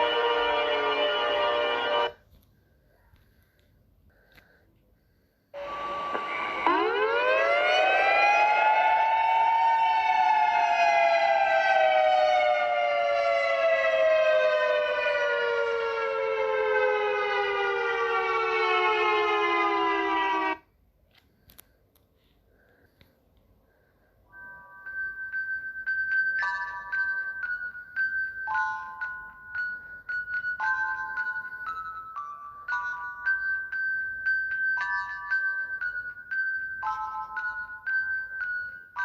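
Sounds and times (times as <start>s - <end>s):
civil defense siren: 0.0s - 2.2s, 5.6s - 20.7s.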